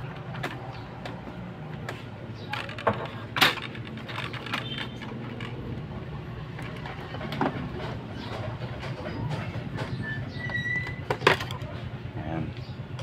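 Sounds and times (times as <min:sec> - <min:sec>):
plastic housing clicks and scraping: 0:01.8 - 0:11.8
short squeak: 0:09.9 - 0:11.1.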